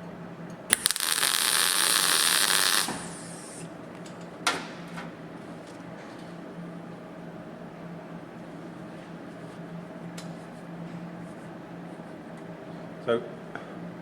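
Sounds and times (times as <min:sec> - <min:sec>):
sharp crack: 0:00.7 - 0:03.6
welder click: 0:00.7 - 0:03.6
crackling welding arc hiss: 0:00.7 - 0:03.7.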